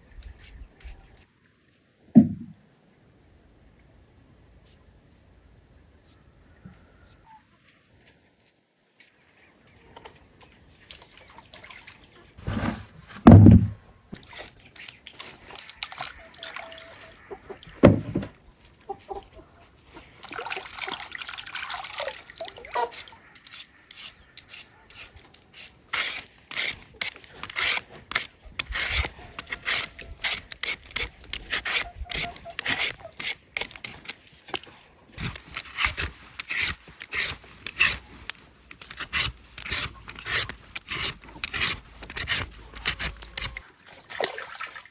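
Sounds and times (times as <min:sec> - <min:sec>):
heavy knocks: 0:13.2 - 0:13.8
water pouring and dripping: 0:20.0 - 0:24.1, 0:42.9 - 0:44.9.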